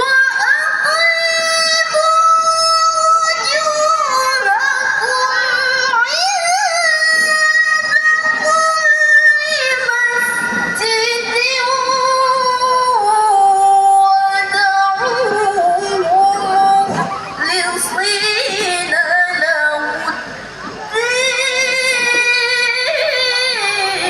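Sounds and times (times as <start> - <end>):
woman chanting recitation: 0.0 - 24.0.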